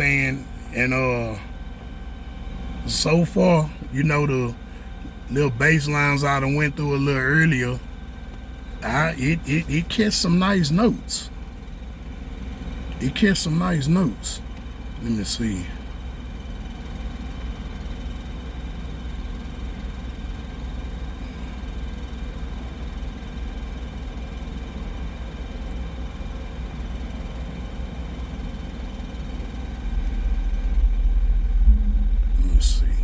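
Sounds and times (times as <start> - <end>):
deep subwoofer bass line: 29.8 - 33.0.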